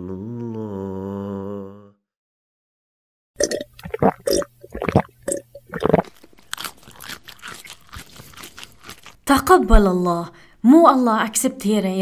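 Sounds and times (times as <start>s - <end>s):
crunching: 5.7s - 9.4s.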